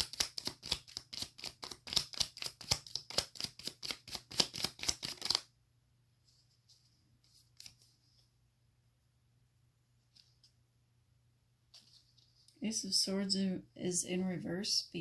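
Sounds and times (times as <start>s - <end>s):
cards being shuffled: 0.0s - 5.5s, 6.6s - 8.0s
faint card rustles: 6.2s - 8.3s, 10.0s - 10.6s, 11.7s - 12.6s.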